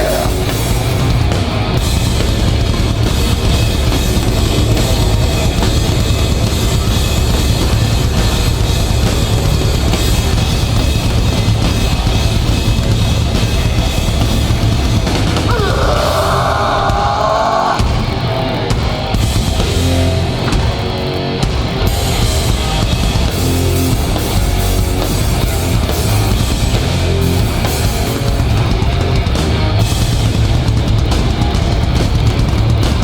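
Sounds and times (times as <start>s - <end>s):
shouted vocal: 0.0s - 0.4s, 15.5s - 17.9s
drum kit: 0.0s - 33.0s
loud heavy band playing: 0.0s - 33.0s.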